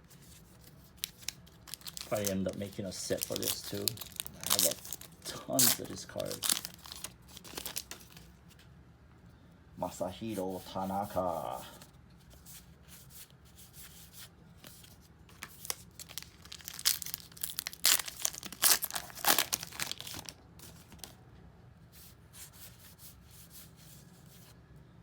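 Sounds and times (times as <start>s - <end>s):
wrapper tearing and crinkling: 0.9s - 8.3s, 15.3s - 21.1s.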